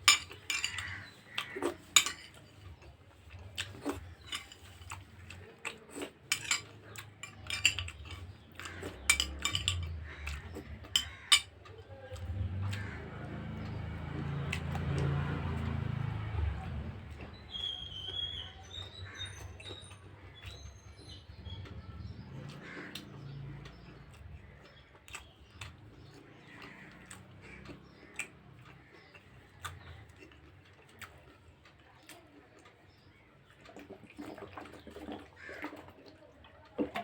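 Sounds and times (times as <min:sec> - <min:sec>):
utensils clicking on plate: 0:00.0 - 0:02.7, 0:03.6 - 0:11.7
chewing: 0:00.0 - 0:37.0
bird chirping: 0:17.3 - 0:22.2.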